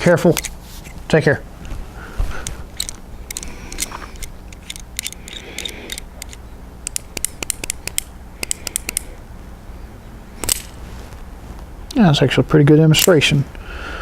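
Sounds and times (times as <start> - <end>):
carabiner gate clicking: 2.7 - 9.1, 10.4 - 10.8.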